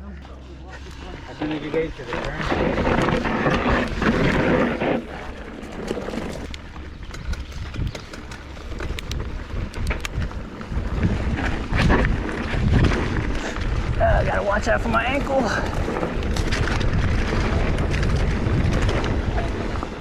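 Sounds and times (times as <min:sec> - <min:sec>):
bike rattling: 0:00.0 - 0:20.0
bike tyres on dirt: 0:00.0 - 0:20.0
wind on microphone: 0:01.8 - 0:20.0
stones clicking: 0:02.8 - 0:10.7.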